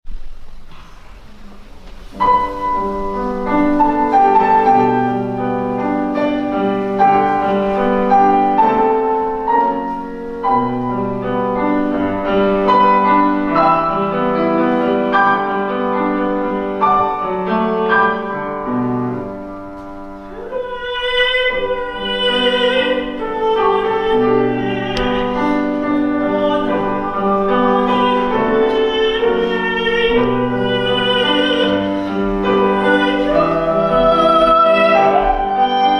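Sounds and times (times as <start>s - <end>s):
solo piano: 0.1s - 35.9s
soprano singing with vibrato: 20.2s - 35.9s.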